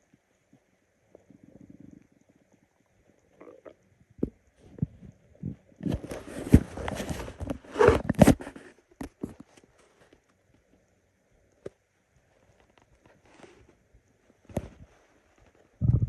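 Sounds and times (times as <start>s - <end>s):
stomach growling and gurgling: 0.4s - 8.3s, 15.7s - 16.0s
stomach pops: 3.4s - 9.7s, 14.4s - 14.9s, 15.8s - 16.0s.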